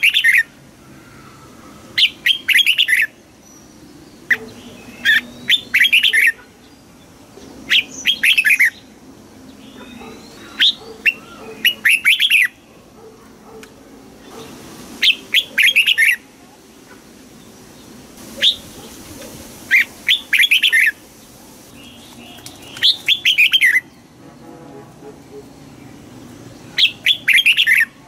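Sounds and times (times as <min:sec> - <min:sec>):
bird singing whistled notes: 0:00.0 - 0:00.5, 0:02.0 - 0:06.4, 0:07.7 - 0:08.9, 0:09.7 - 0:12.6, 0:15.0 - 0:16.2, 0:18.4 - 0:18.7, 0:19.7 - 0:21.0, 0:21.8 - 0:24.0, 0:26.8 - 0:28.0.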